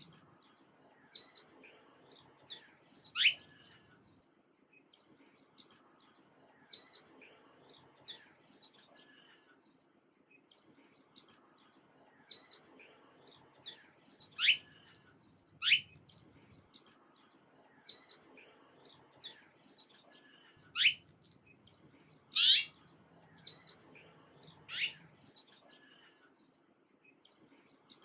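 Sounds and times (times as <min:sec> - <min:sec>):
soft high bird chirps: 0:01.0 - 0:03.8, 0:12.1 - 0:15.0, 0:15.6 - 0:17.0, 0:18.9 - 0:26.0
loud downward-sweeping bird chirps: 0:03.1 - 0:03.4, 0:22.4 - 0:22.7, 0:24.7 - 0:25.0.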